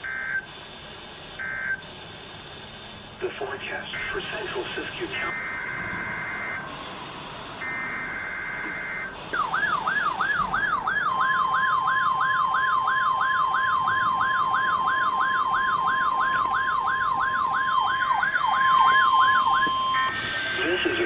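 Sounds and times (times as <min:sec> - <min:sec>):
steady warning alarm tone: 0:00.0 - 0:21.0
two-tone data burst screech: 0:04.0 - 0:10.4, 0:19.6 - 0:21.0.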